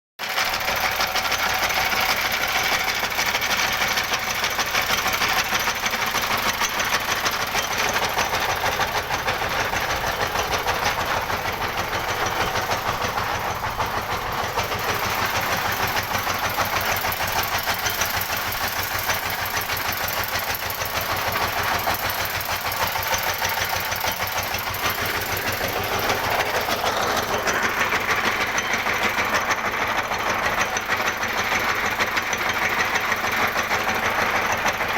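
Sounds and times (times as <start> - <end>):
drilling machine motor pulsing: 0.4 - 34.9.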